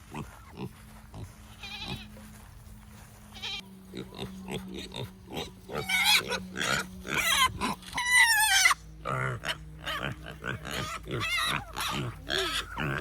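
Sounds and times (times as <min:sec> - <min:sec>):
high-pitched wavering bleat: 0:00.1 - 0:02.3, 0:03.3 - 0:13.0
livestock grunting calls: 0:03.5 - 0:13.0.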